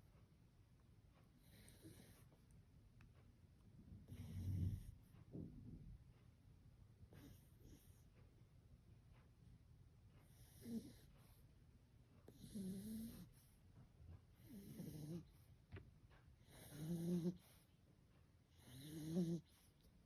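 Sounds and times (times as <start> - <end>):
puppy snoring: 1.4 - 2.4, 3.9 - 5.4, 7.1 - 8.0, 10.2 - 11.4, 12.2 - 13.6, 14.3 - 15.5, 16.4 - 17.7, 18.5 - 19.8.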